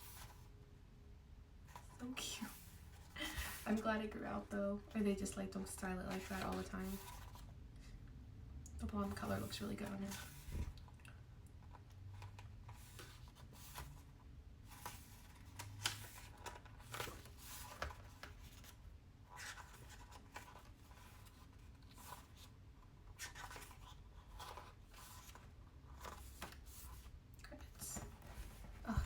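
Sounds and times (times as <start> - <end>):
paper pages rustling: 5.7 - 7.6, 11.6 - 29.0.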